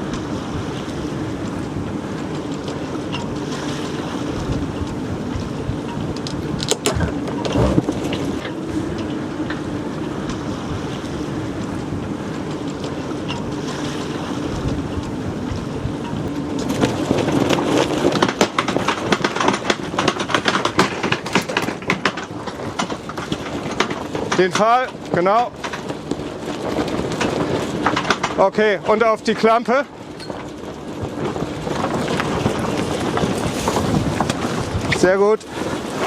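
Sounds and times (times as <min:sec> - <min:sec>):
water noise: 0:00.0 - 0:17.7
sailcloth and rigging flapping: 0:00.0 - 0:36.0
wind buffeting microphone: 0:00.0 - 0:36.0.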